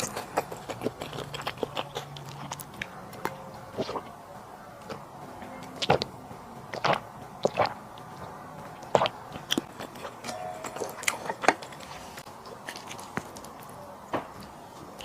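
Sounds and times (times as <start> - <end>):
sharp mouth clicks and smacks: 0.0 - 4.1, 6.7 - 10.3
chewing and mouth noises: 0.0 - 15.0.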